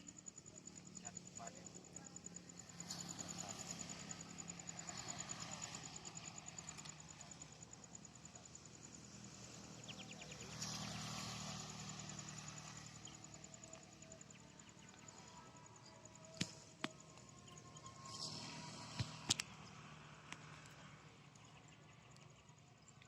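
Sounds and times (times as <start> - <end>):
insect chirping: 0.0 - 23.0
broad swell of noise: 1.8 - 21.3
sharp clicks: 19.0 - 19.6.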